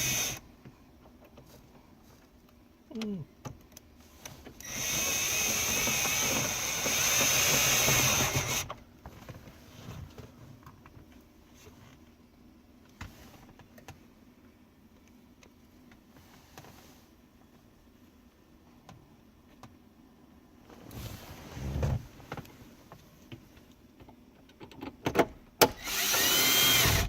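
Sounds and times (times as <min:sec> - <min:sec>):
cordless drill driving screws: 0:00.0 - 0:00.4, 0:04.6 - 0:08.7, 0:25.6 - 0:27.0.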